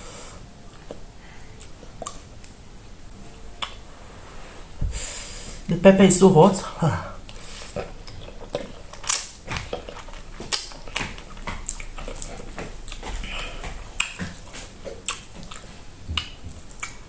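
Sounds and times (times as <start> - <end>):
person chewing pasta: 0.6 - 2.6, 3.6 - 4.0, 7.2 - 17.0
wet mouth smacks and clicks: 8.0 - 13.1, 14.0 - 15.6.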